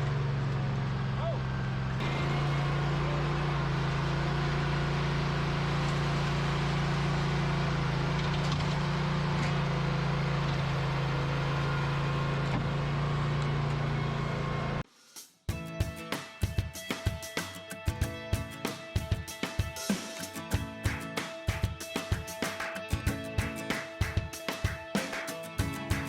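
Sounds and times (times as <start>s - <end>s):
large engine humming: 0.0s - 14.8s
music: 14.9s - 26.0s.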